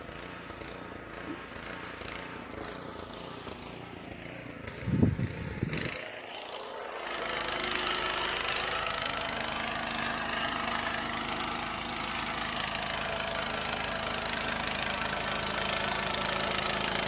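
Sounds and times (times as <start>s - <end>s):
snow blower engine running: 0.0s - 17.0s.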